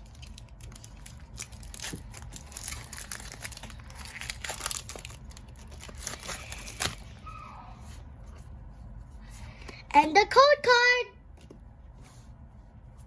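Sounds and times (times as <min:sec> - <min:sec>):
foil wrapper tearing and crinkling: 0:00.0 - 0:07.2.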